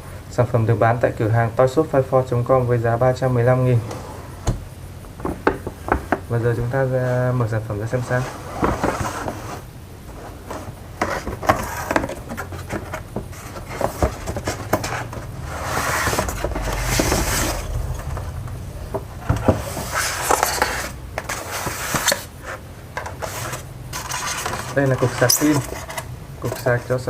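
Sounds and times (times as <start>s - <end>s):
packaging rustling and scraping: 8.0s - 18.3s, 18.9s - 27.0s.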